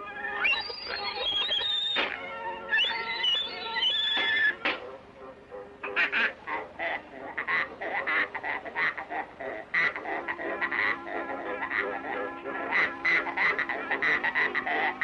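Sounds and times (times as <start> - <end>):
short animal calls: 0.3 - 4.6.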